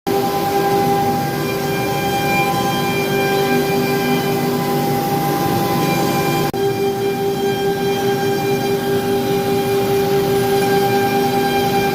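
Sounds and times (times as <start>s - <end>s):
machine whine: 0.1s - 11.9s
mechanical noise: 0.1s - 11.9s.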